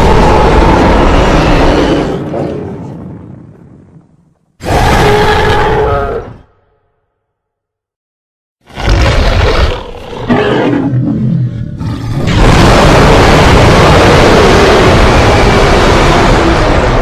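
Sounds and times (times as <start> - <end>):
monster roars: 0.0 - 2.8, 4.6 - 6.4, 8.7 - 17.0.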